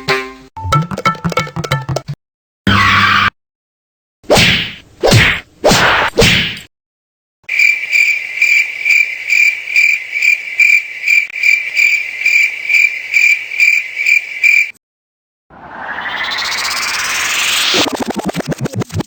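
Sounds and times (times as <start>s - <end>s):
crickets chirping: 7.5s - 14.8s
rising sweep effect: 15.5s - 18.1s.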